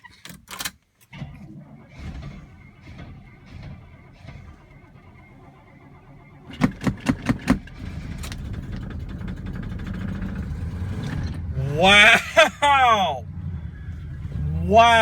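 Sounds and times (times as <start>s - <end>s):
car engine cold starting: 0.0s - 15.0s
loud engine pops: 2.1s - 11.4s.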